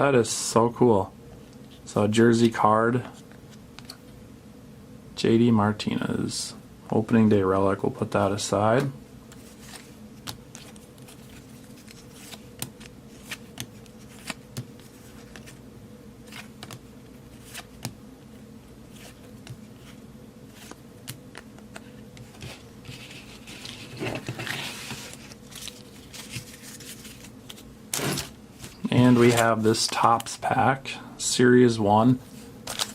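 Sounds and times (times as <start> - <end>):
low steady hum: 0.0 - 32.9
cards clicking and tapping: 8.8 - 15.6, 16.3 - 18.0, 19.0 - 20.0, 20.6 - 23.0
foil pack crinkling: 23.3 - 27.6, 32.6 - 32.9.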